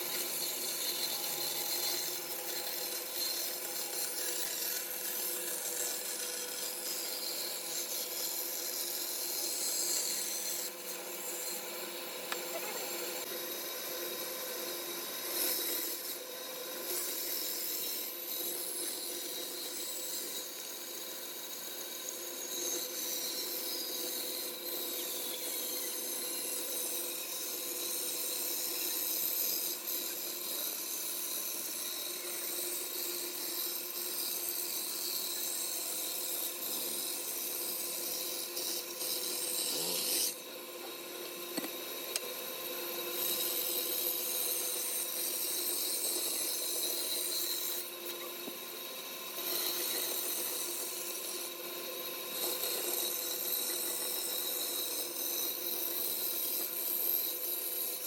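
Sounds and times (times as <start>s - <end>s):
tool rasping wood: 0.0s - 58.0s.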